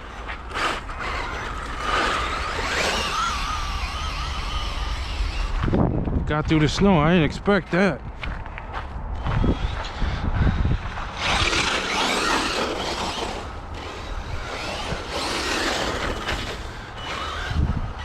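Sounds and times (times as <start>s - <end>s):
tyres churning snow: 0.0s - 5.7s, 10.8s - 18.0s
electric motor running: 0.0s - 5.8s, 9.2s - 18.0s.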